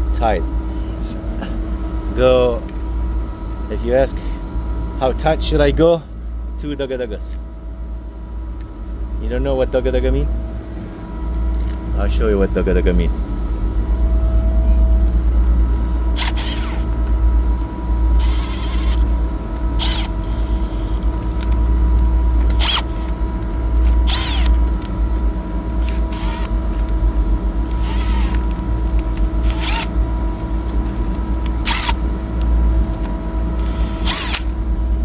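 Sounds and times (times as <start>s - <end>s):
chiller machinery humming: 0.0s - 35.0s.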